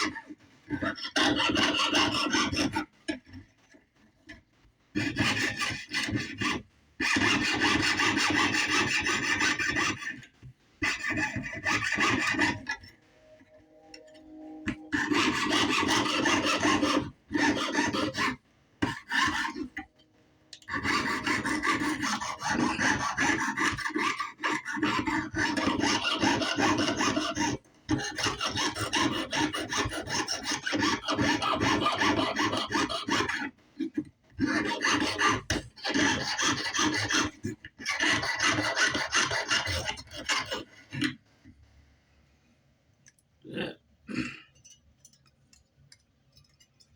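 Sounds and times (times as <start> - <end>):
jeweler's saw cutting: 0.8 - 3.2, 5.0 - 20.0, 20.6 - 33.5, 34.4 - 40.7.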